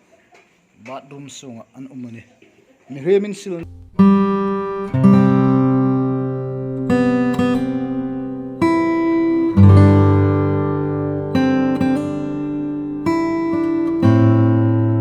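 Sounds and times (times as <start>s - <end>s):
acoustic guitar chords strummed: 3.6s - 15.0s.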